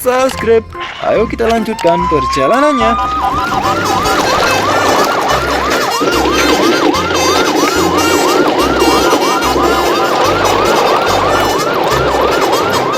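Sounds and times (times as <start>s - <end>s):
electronic yelp siren: 0.8s - 12.9s.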